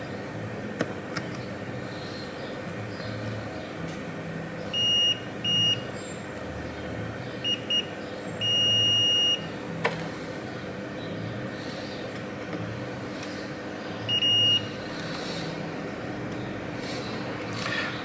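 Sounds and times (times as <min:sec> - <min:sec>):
multimeter continuity beeps: 0:04.8 - 0:05.9, 0:07.4 - 0:09.5, 0:14.0 - 0:14.8.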